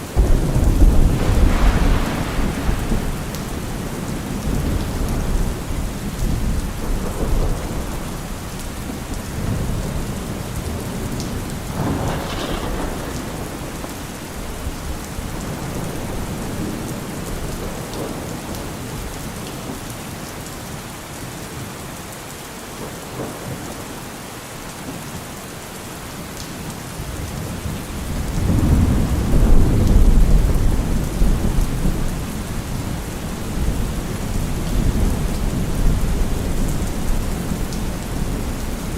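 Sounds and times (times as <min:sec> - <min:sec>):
rolling thunder: 0:00.0 - 0:19.1, 0:27.6 - 0:38.9
heavy rain falling: 0:00.0 - 0:38.9.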